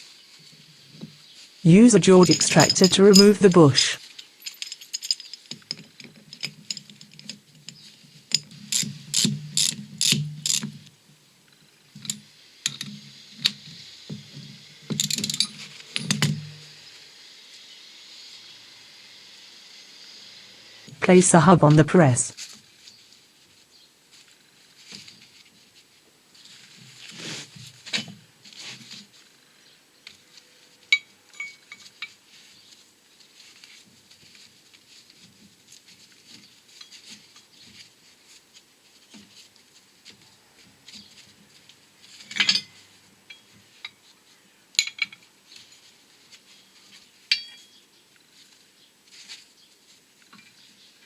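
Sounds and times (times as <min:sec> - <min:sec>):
metallic clinks and knocks: 0:02.2 - 0:10.8, 0:12.0 - 0:13.0, 0:14.9 - 0:16.8, 0:31.0 - 0:31.9, 0:47.3 - 0:47.7.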